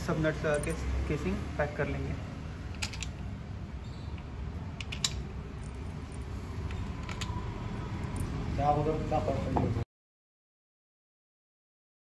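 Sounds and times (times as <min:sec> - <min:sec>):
low workshop background: 0:00.0 - 0:09.8
metallic clicks and taps: 0:04.1 - 0:05.3.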